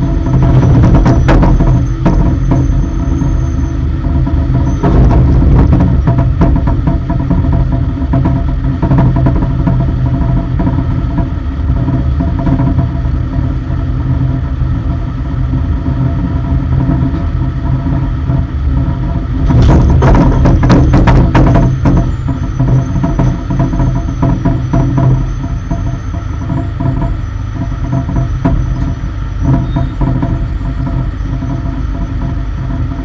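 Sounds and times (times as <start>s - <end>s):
rattling and knocking: 0.0s - 13.5s, 15.8s - 33.0s
cargo loader engine humming: 0.0s - 33.0s.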